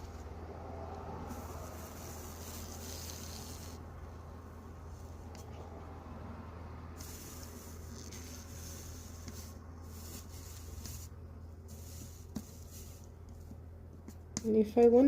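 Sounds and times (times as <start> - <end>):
steady low hum: 0.0 - 15.0
soldering iron sizzling: 1.3 - 3.8.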